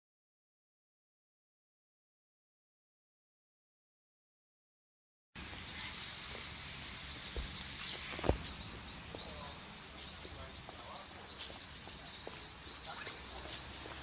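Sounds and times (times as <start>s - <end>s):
small birds chirping: 5.4s - 14.0s.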